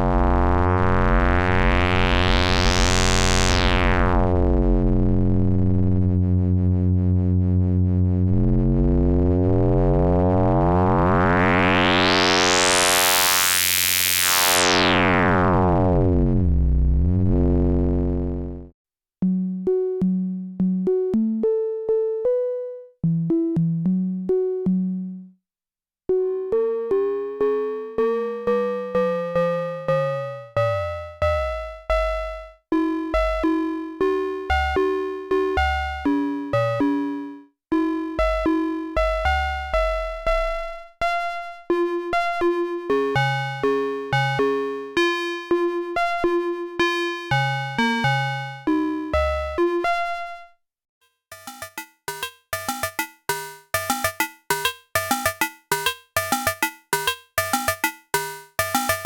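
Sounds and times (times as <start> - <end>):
synth oscillator notes: 0.0 - 18.7, 26.2 - 32.5, 37.8 - 50.4, 51.3 - 59.0.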